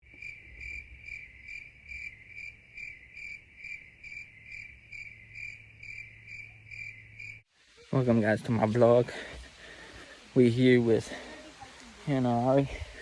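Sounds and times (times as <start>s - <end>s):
insect pulsing trill: 0.1s - 7.4s
short higher insect chirps: 0.1s - 7.4s.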